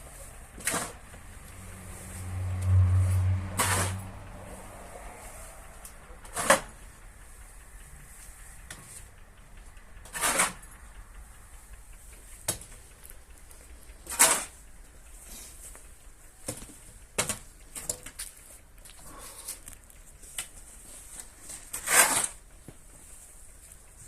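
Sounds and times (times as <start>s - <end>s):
short knocks and scrapes: 0.0s - 5.4s, 6.2s - 6.9s, 10.0s - 10.7s, 14.0s - 14.6s, 21.0s - 22.4s.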